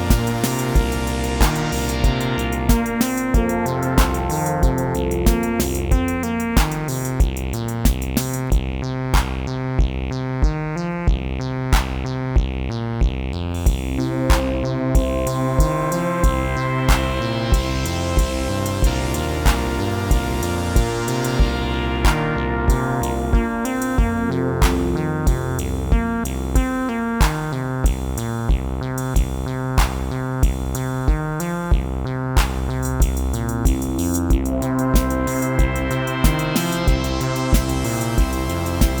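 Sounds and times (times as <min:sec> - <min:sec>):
noisy snare-like hit: 0:00.0 - 0:03.4, 0:04.0 - 0:04.5, 0:06.6 - 0:07.2, 0:09.2 - 0:09.6, 0:11.8 - 0:12.1, 0:14.3 - 0:14.6, 0:16.9 - 0:17.3, 0:19.5 - 0:19.9, 0:22.0 - 0:22.4, 0:24.6 - 0:25.2, 0:27.2 - 0:27.6, 0:29.8 - 0:30.2, 0:32.4 - 0:32.8, 0:36.2 - 0:39.0
clicky hi-hat hits: 0:00.0 - 0:08.6, 0:32.4 - 0:39.0
synthesizer notes: 0:00.0 - 0:09.7, 0:13.7 - 0:28.9, 0:33.0 - 0:39.0
electronic kick drum: 0:00.0 - 0:39.0.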